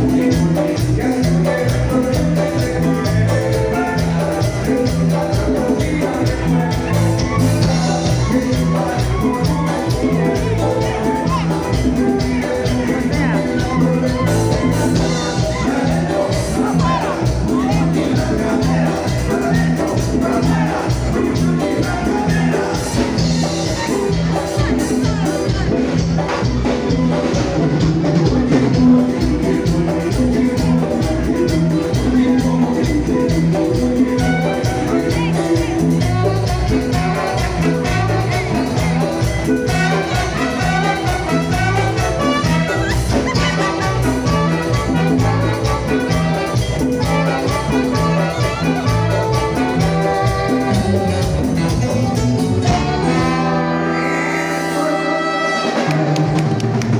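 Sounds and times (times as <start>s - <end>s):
latin dance band playing: 0.0s - 56.9s
brass run: 36.1s - 38.9s, 39.6s - 56.9s.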